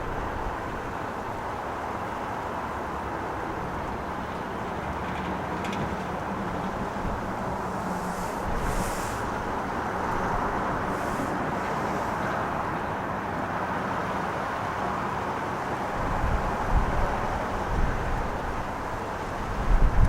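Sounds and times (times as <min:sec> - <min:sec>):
jet engines running: 0:02.6 - 0:13.4.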